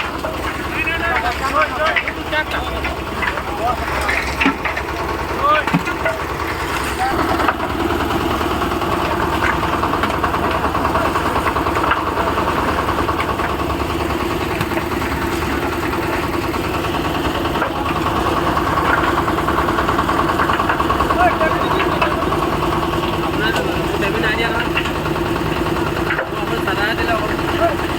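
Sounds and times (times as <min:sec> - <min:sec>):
concrete mixer engine chugging: 0:00.0 - 0:27.9.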